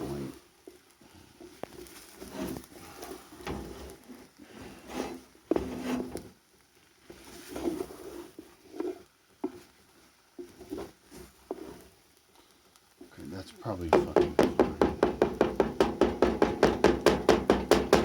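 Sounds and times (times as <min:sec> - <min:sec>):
kitchenware knocks and scrapes: 0:13.9 - 0:18.0.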